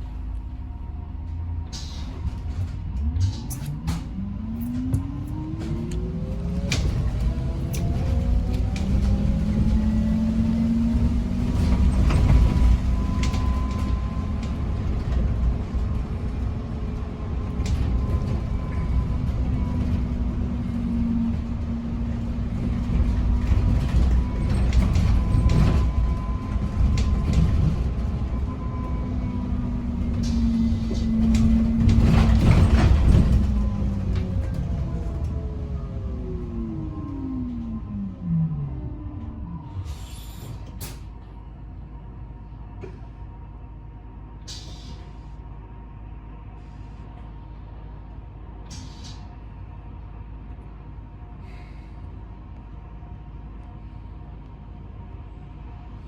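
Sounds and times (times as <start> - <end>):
bus low rumble: 0.0 - 56.0
knocks and rattles: 31.0 - 34.3.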